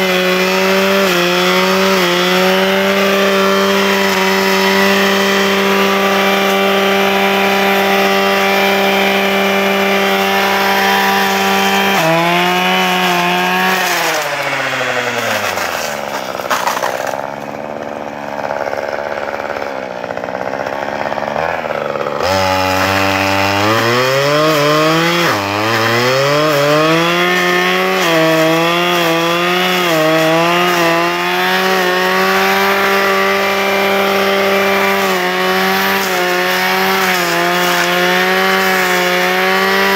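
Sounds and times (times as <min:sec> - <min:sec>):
blade cutting through brush: 0:00.0 - 0:39.9
brushcutter engine revving: 0:00.0 - 0:39.9.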